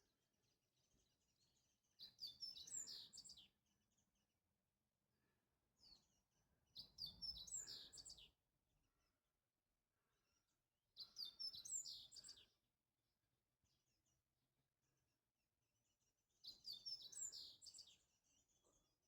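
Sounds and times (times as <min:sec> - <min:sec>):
songbird chirping: 0:00.8 - 0:04.0, 0:05.8 - 0:08.4, 0:11.0 - 0:12.6, 0:16.4 - 0:18.9.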